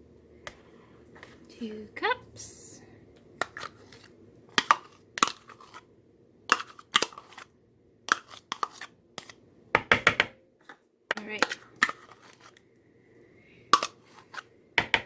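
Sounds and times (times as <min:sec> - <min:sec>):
cup scraping and knocking container: 0:03.4 - 0:05.8, 0:08.1 - 0:09.3, 0:11.2 - 0:12.6.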